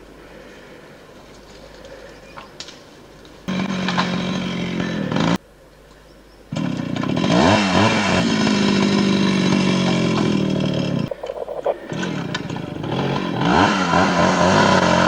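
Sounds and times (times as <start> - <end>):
small petrol engine running: 3.5 - 5.4, 6.5 - 11.1, 11.9 - 15.0.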